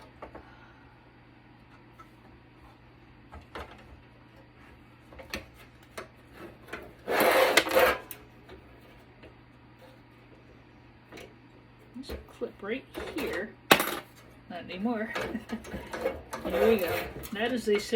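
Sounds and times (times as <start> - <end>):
loud scraping rub: 16.4 - 17.3.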